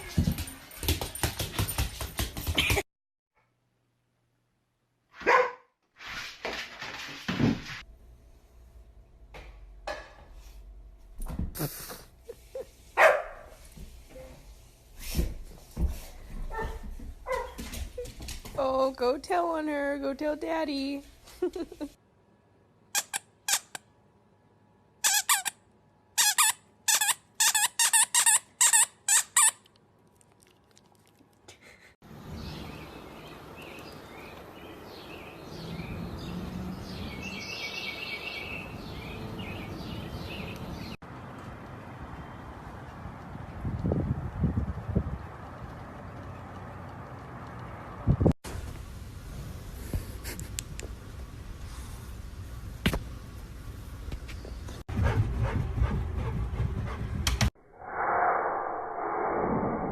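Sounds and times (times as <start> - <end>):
dog barking: 5.2 - 5.7, 13.0 - 13.6, 16.5 - 17.6.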